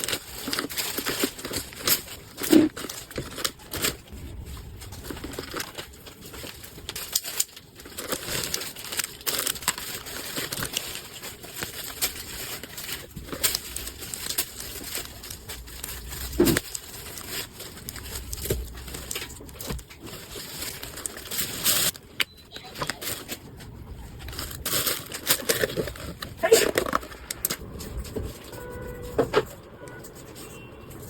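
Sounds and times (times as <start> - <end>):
packaging crinkling and tearing: 0.0 - 31.0.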